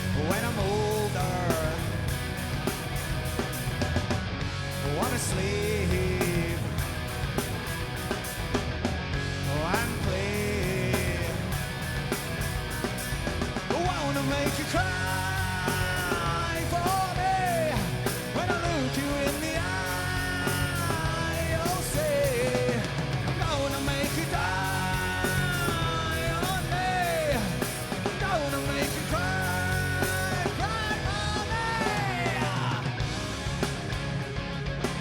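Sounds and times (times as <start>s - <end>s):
lead vocalist singing: 0.0s - 2.2s, 4.8s - 7.0s, 9.4s - 11.8s, 13.7s - 33.1s
rock band playing live: 0.0s - 35.0s.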